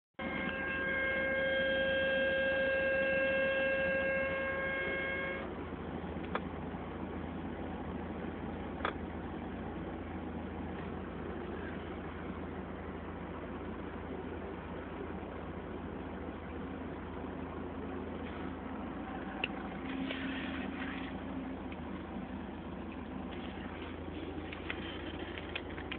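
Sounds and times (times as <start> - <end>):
pitched whine with overtones: 0.2 - 5.6, 18.1 - 25.9
vehicle noise with low hum: 0.2 - 25.9.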